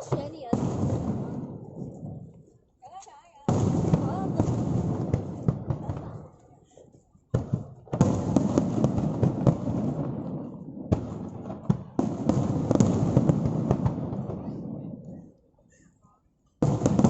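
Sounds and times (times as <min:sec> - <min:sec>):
fireworks bangs: 0:00.0 - 0:02.5, 0:03.3 - 0:15.3, 0:16.6 - 0:17.0
fireworks crackling: 0:00.0 - 0:15.4, 0:16.5 - 0:17.0.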